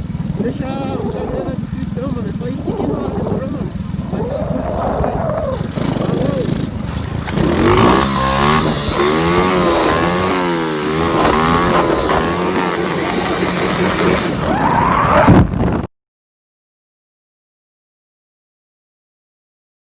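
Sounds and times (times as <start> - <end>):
motorcycle engine revving: 0.0 - 15.9.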